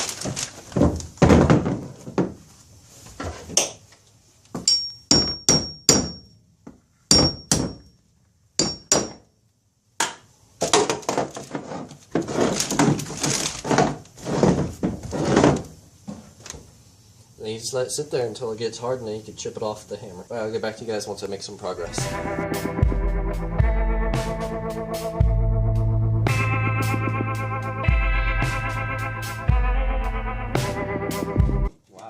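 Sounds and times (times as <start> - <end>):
hammer knocking on sheet metal: 5.1 - 6.3, 7.1 - 7.9.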